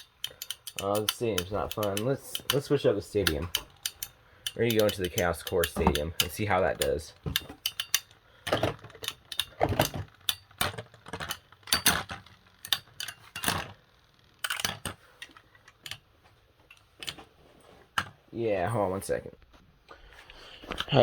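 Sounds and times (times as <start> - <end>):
hard plastic clattering and knocking: 4.8 - 7.9, 8.5 - 12.3.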